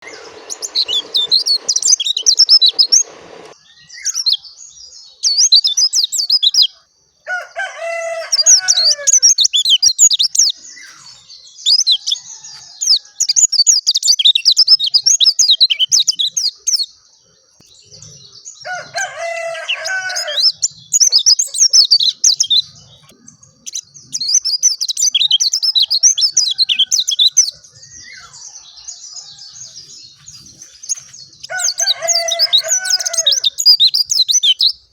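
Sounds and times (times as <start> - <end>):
low drawn-out bird call: 0.0 - 3.6
bird high twittering: 0.0 - 4.3.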